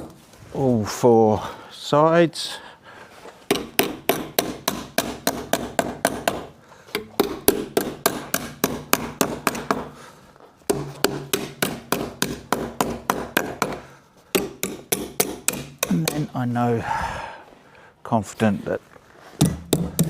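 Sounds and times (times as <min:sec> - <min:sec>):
sharp strikes on wooden frame: 0:03.5 - 0:10.0, 0:10.7 - 0:16.4, 0:19.4 - 0:20.0.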